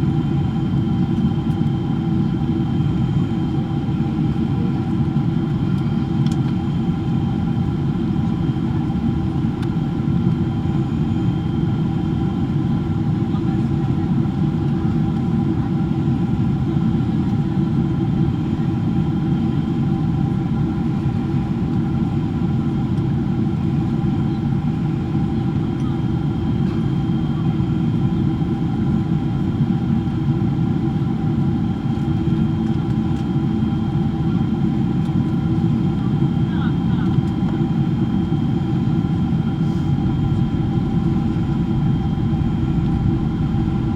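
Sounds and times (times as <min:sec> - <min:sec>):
airplane cabin rumble: 0:35.1 - 0:43.9
jet engine whine tones: 0:37.3 - 0:43.9.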